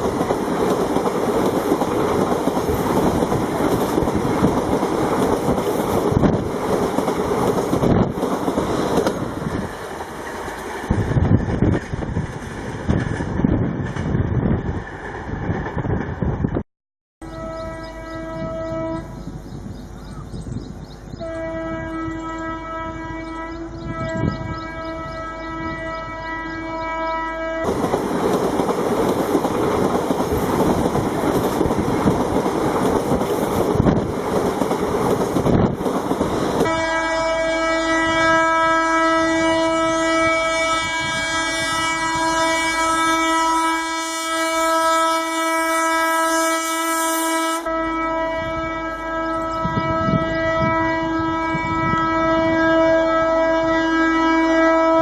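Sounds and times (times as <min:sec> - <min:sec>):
rattle of train coaches: 0:00.0 - 0:16.6, 0:17.4 - 0:54.2
rush of passing train: 0:00.0 - 0:16.6, 0:17.3 - 0:55.0
train horn long note: 0:17.2 - 0:19.3, 0:21.2 - 0:27.7, 0:36.6 - 0:55.0.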